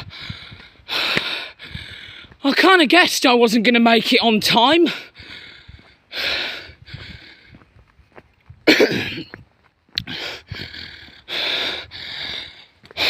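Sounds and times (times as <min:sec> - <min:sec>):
man breathing hard: 0:00.0 - 0:02.4, 0:04.8 - 0:07.8, 0:09.3 - 0:13.0.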